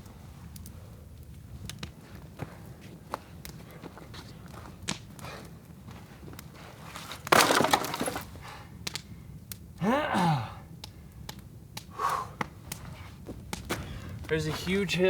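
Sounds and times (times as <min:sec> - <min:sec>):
dry wood cracking: 0:01.3 - 0:09.1.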